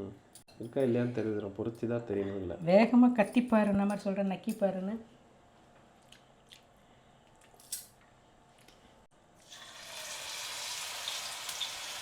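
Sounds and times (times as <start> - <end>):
hot oil sizzling: 9.4 - 12.0.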